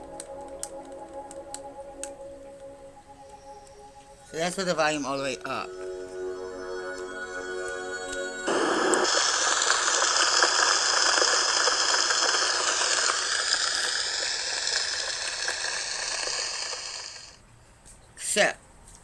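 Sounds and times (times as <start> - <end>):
soothing held tones: 0.0 - 9.4.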